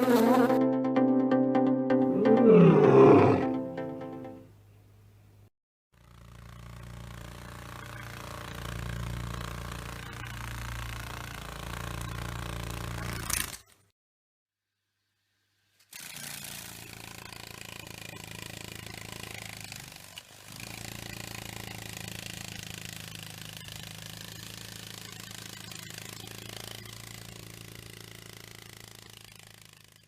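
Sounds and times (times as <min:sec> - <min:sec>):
beetle buzzing in flight: 0:00.0 - 0:00.6.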